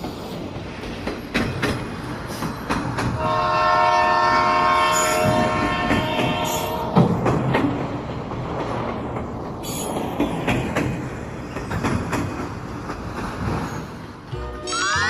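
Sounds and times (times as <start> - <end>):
train rumbling on rails: 0.0 - 15.0
train horn: 3.2 - 7.1.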